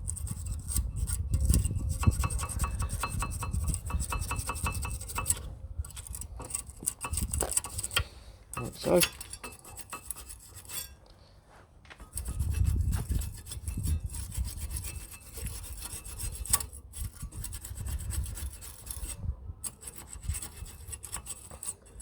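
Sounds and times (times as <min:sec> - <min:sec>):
wire brush scrubbing metal: 0:00.0 - 0:11.0, 0:12.1 - 0:22.0.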